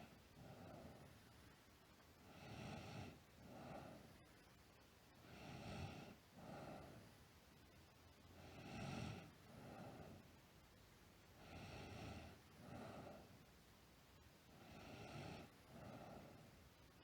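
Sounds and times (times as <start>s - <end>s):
girl snoring softly: 2.2s - 4.2s, 5.2s - 7.1s, 8.3s - 10.3s, 11.3s - 13.5s, 14.5s - 16.6s.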